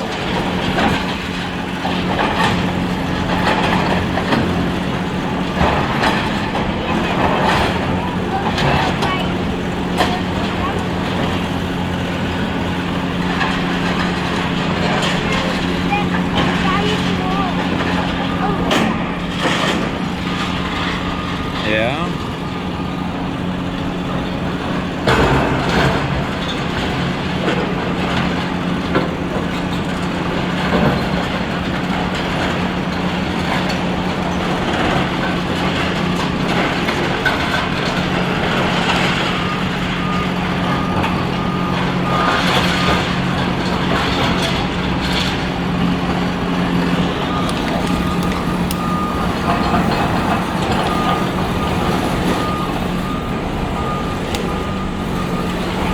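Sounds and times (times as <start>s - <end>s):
excavator engines running: 0.0s - 55.9s
reversing alarm beeping: 0.0s - 55.9s.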